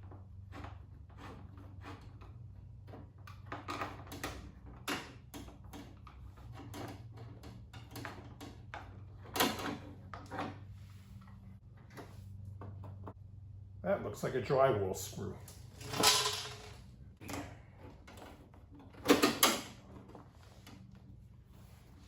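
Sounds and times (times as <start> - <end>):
steady low hum: 10.0 - 19.0.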